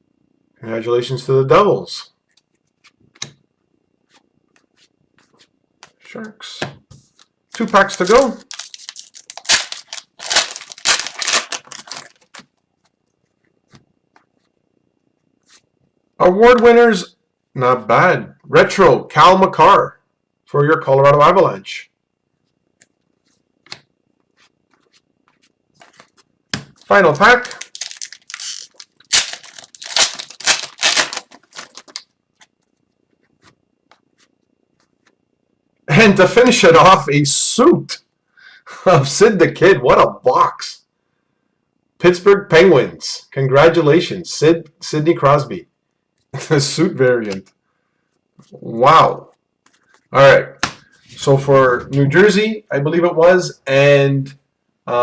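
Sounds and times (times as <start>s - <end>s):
card pack wrapper tearing: 7.5s - 12.4s, 26.8s - 32.0s.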